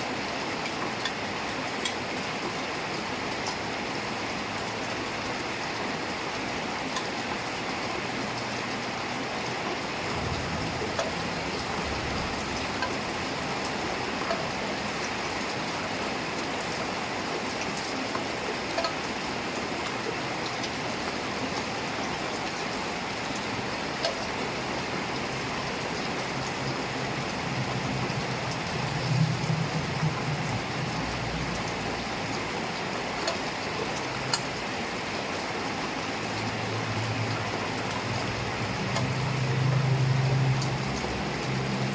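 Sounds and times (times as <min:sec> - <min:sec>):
heavy rain: 0:00.0 - 0:41.9
drip ticks: 0:00.6 - 0:01.2, 0:01.8 - 0:02.0, 0:06.9 - 0:07.4, 0:10.7 - 0:15.2, 0:16.7 - 0:19.2, 0:23.3 - 0:24.4, 0:31.4 - 0:34.6, 0:36.3 - 0:41.9
low rumble: 0:10.0 - 0:14.1, 0:26.5 - 0:32.2.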